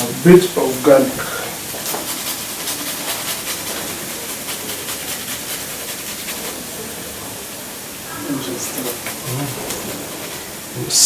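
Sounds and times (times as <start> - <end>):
garlic grating on hand grater: 0.0 - 6.7
onions sizzling in oil: 0.0 - 11.0.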